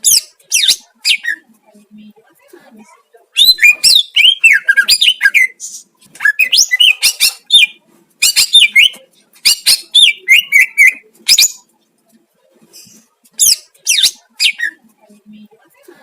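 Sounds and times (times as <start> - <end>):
bird chirping and whistling: 3.4 - 11.6, 13.4 - 14.8.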